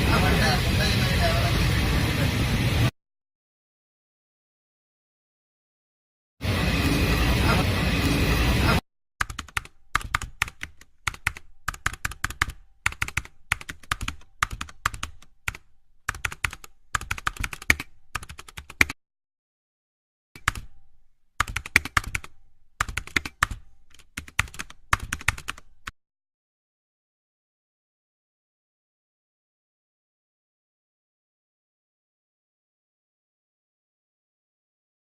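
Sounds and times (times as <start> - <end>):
rapid typing-like clicking: 9.2 - 19.0, 20.4 - 20.8, 21.4 - 25.9.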